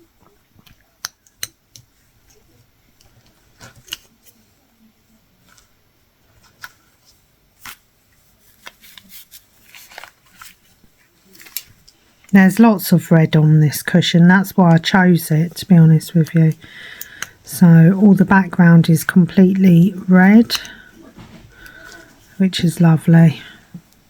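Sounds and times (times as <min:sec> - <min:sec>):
yarn rustling and scraping: 0:05.5 - 0:12.2.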